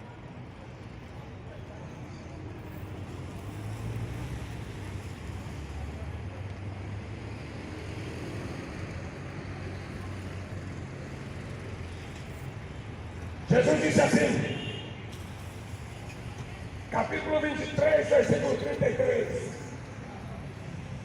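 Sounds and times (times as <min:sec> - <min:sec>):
low street rumble: 0:00.0 - 0:21.0.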